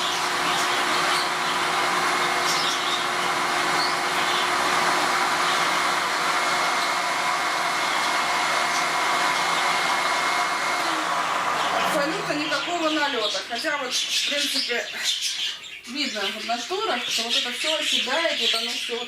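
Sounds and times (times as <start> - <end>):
vacuum cleaner running: 0.0 - 14.5.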